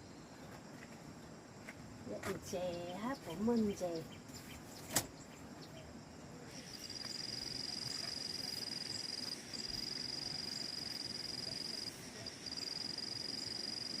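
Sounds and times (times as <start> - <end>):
insect trilling: 6.5 - 14.0.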